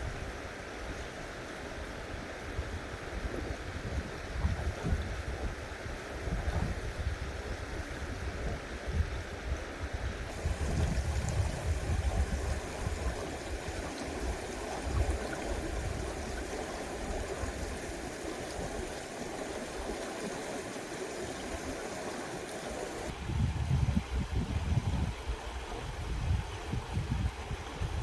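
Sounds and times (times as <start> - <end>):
stream rushing over rocks: 10.3 - 23.2.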